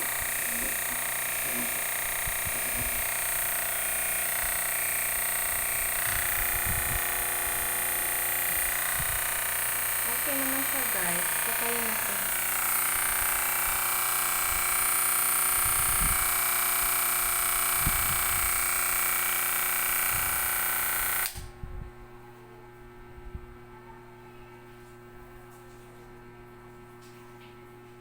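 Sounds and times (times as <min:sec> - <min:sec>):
electric hair clipper buzzing: 0:00.0 - 0:21.5.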